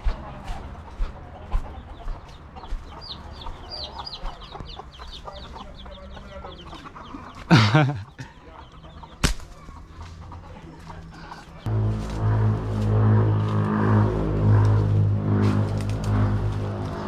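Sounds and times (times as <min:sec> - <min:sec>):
chickens chirping and squawking: 0:00.0 - 0:11.7.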